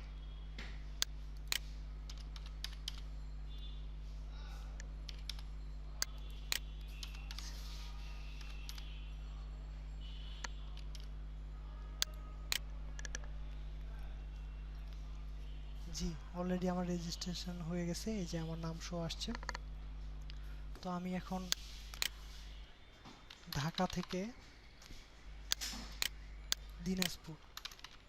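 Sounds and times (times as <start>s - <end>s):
low electrical hum: 0.0s - 28.0s
computer keys clicking: 1.0s - 3.1s, 4.8s - 7.5s, 8.3s - 8.9s, 10.4s - 11.1s, 12.0s - 13.6s, 19.3s - 19.6s, 23.3s - 24.3s, 25.5s - 28.0s.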